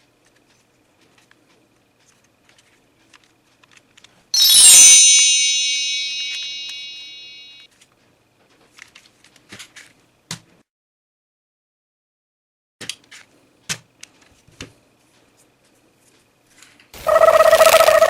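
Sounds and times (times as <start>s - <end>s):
bright metallic chime: 4.4s - 7.6s.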